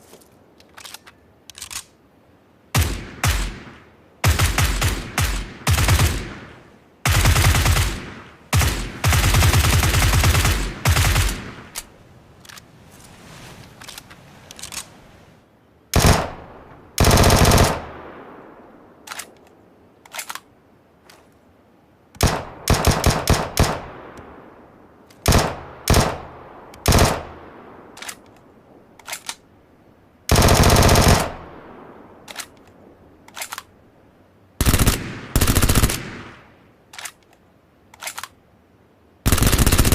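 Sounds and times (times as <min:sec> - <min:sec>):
automatic gunfire bursts: 0:02.8 - 0:11.8, 0:16.0 - 0:16.4, 0:17.0 - 0:18.0, 0:22.2 - 0:23.9, 0:25.3 - 0:27.3, 0:30.3 - 0:31.5, 0:34.6 - 0:36.4, 0:39.3 - 0:39.9
single gunshots: 0:02.8 - 0:11.8.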